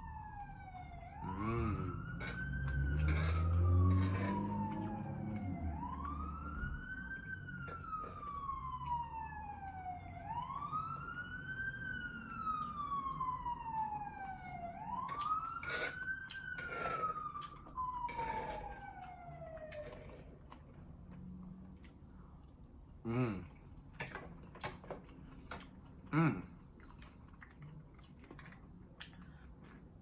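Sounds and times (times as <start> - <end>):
emergency vehicle siren wailing: 0.0 - 21.7.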